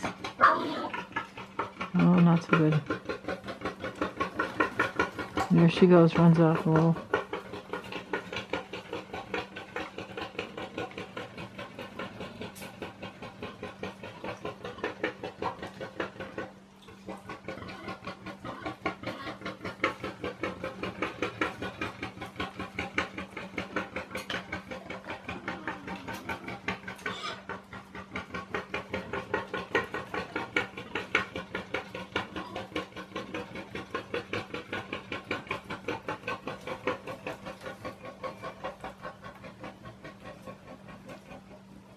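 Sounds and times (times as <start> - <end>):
warthog chugging grunts: 0.0 - 41.9.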